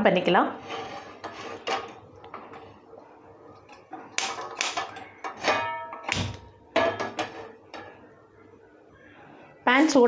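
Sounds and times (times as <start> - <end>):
metal cookware clanking: 0.6 - 2.8, 3.6 - 8.0.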